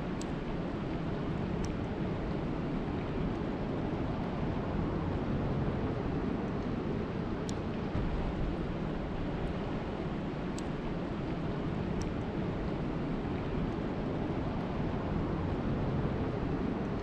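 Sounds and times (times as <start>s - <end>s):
rushing water and rain: 0.0s - 17.0s
faint ticks: 0.1s - 0.4s, 1.6s - 1.9s.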